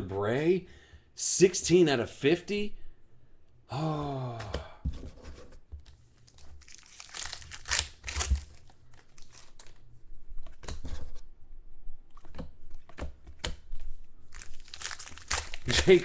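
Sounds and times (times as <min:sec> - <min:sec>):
foil wrapper crinkling and tearing: 0:06.3 - 0:09.8, 0:14.3 - 0:16.0
cards snapping and ticking: 0:14.4 - 0:16.0.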